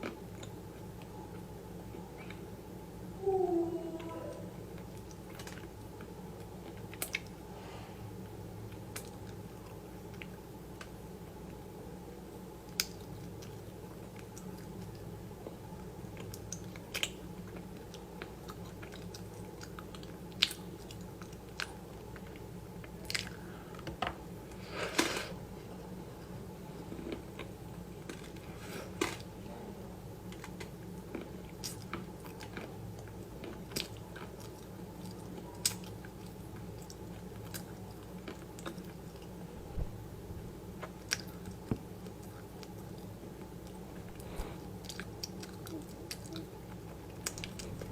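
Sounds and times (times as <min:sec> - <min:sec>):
steady low hum: 0:00.0 - 0:47.9
crunching while chewing: 0:12.7 - 0:23.9, 0:26.2 - 0:29.3, 0:30.2 - 0:39.4, 0:40.8 - 0:47.9.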